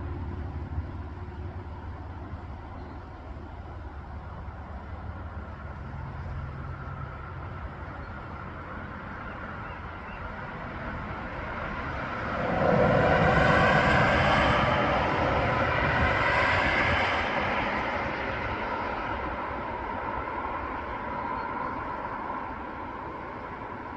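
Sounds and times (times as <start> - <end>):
vehicle passing: 11.0 - 18.1.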